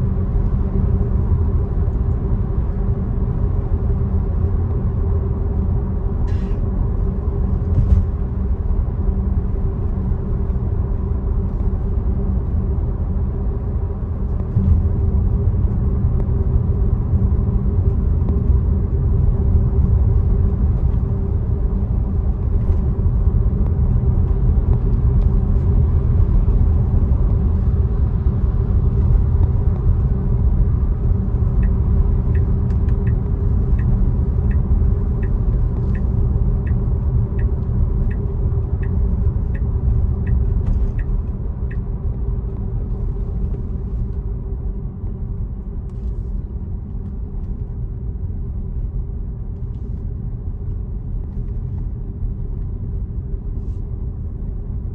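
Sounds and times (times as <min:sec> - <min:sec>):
road and tyre rumble: 0:00.0 - 0:54.9
turn signal ticking: 0:29.0 - 0:42.9.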